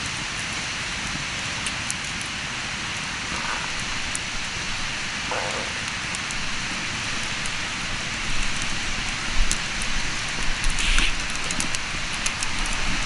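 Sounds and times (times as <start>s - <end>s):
campfire crackling and popping: 0.0s - 13.0s
wind on microphone: 3.2s - 13.0s.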